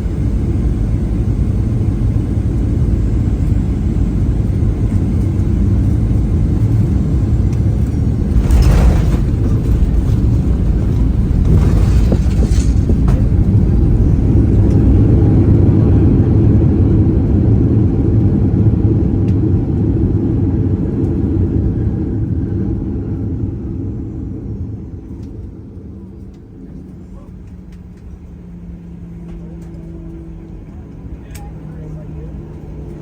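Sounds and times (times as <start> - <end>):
airliner cabin rumble: 0.0 - 33.0
brief rattles: 8.2 - 15.4.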